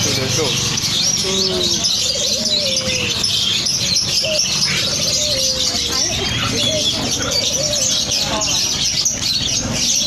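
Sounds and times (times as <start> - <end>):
songbirds chirping: 0.0 - 10.0
low falling cooing call: 1.2 - 8.6.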